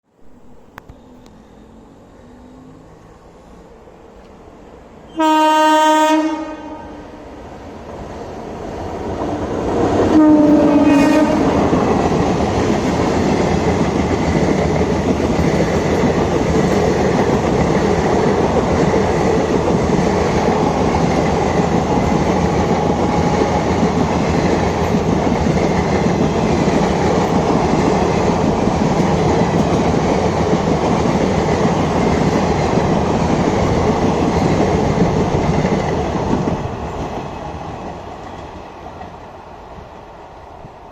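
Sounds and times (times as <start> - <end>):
train horn blast: 5.1 - 7.4, 10.1 - 11.8
train wheels clattering over rails: 7.8 - 39.4.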